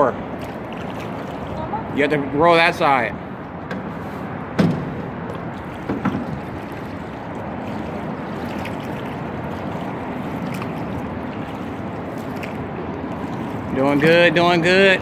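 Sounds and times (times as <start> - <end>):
paddle water splashing: 0.0 - 15.0
short knocks: 4.6 - 6.4.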